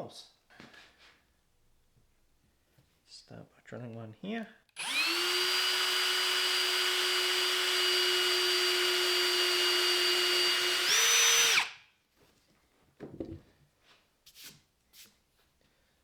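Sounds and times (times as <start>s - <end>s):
power drill drilling into wood: 4.8s - 11.8s.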